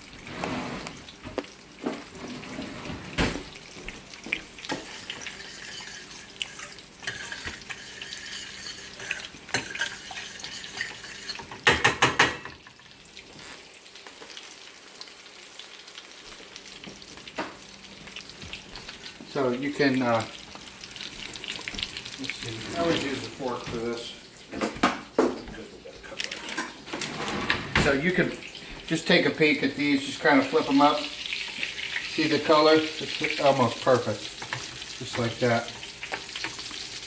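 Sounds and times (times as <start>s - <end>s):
chicken sizzling in a pan: 0.0s - 27.1s, 27.8s - 37.0s
cookware clattering: 4.6s - 12.7s, 24.5s - 28.3s.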